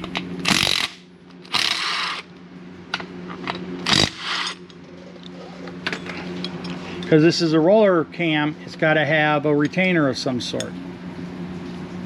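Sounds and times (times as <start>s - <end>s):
steady low hum: 0.0s - 12.0s
power tool bursts: 0.4s - 2.2s, 3.8s - 4.6s.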